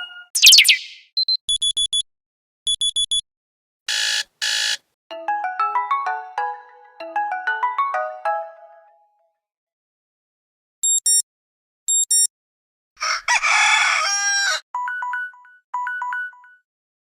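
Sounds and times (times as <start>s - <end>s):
high electronic beeps: 0.4s - 2.0s
rooster crowing: 13.0s - 14.6s.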